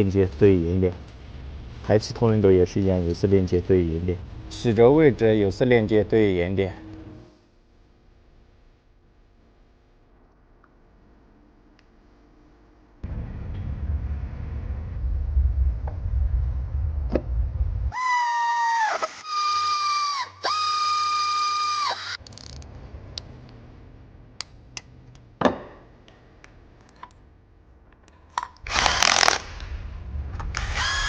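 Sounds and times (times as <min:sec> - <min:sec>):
electric power driver whining: 0:18.0 - 0:22.6, 0:28.6 - 0:29.8, 0:30.4 - 0:31.0.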